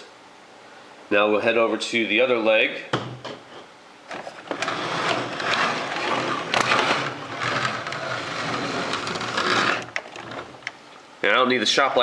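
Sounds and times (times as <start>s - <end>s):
rustling and scraping handling noise: 3.4s - 12.0s.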